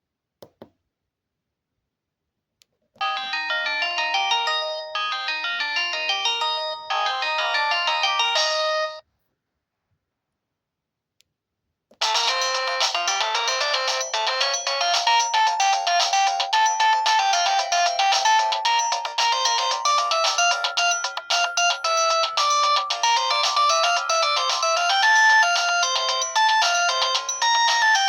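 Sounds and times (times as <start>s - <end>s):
phone ringtone melody: 3.0s - 9.0s, 12.0s - 28.0s.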